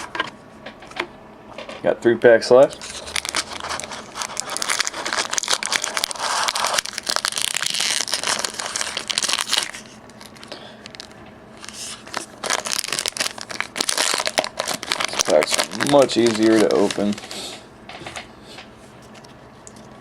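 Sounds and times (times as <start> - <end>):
foil wrapper crinkling and tearing: 2.7 - 17.6.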